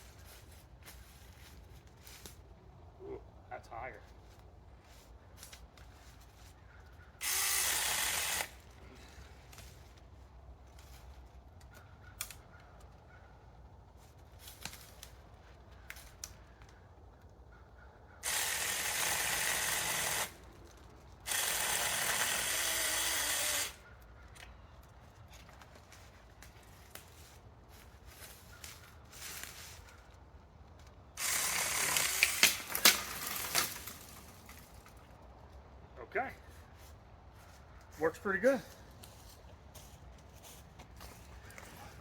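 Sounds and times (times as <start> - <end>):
chainsaw cutting branch: 7.2 - 8.6, 18.2 - 20.4, 21.2 - 23.8, 31.2 - 34.8.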